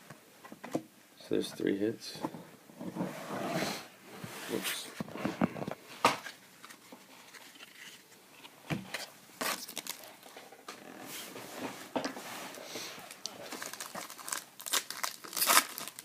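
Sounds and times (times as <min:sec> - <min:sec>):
card wrappers rustling: 0:08.9 - 0:10.4, 0:12.5 - 0:16.0.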